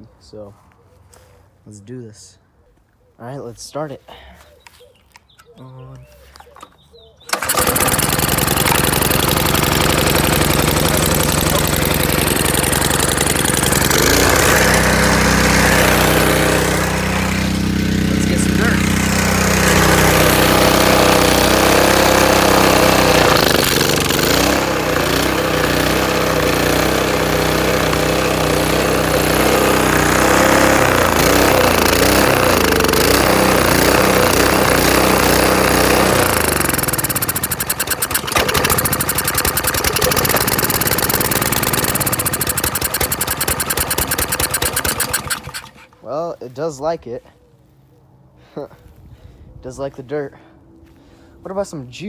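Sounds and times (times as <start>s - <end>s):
small engine running: 7.3s - 46.0s.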